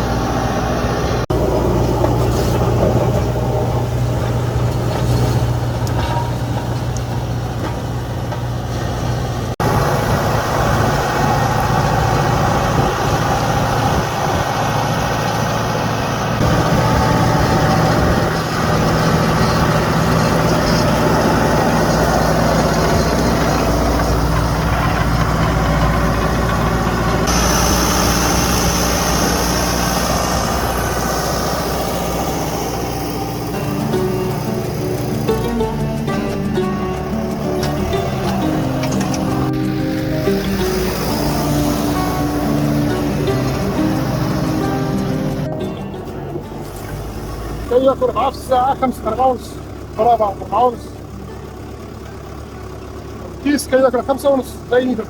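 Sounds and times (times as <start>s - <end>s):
tractor diesel engine running: 0.0s - 55.0s
high hiss: 27.3s - 35.7s.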